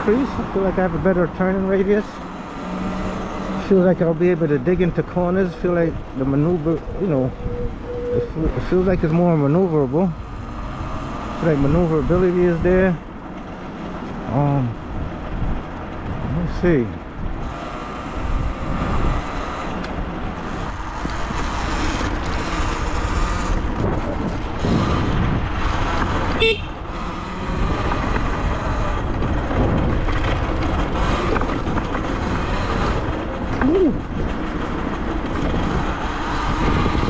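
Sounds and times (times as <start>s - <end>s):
wind and tyre noise: 0.0s - 37.0s
electric motor whine: 2.1s - 3.7s, 9.8s - 12.8s, 17.4s - 23.9s, 26.4s - 29.7s, 30.9s - 34.2s, 35.2s - 37.0s.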